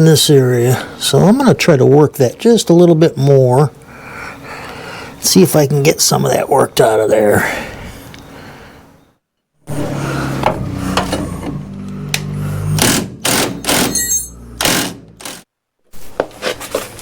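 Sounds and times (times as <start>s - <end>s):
pneumatic air hammer on metal: 12.7s - 15.4s
metallic ring: 13.9s - 14.5s.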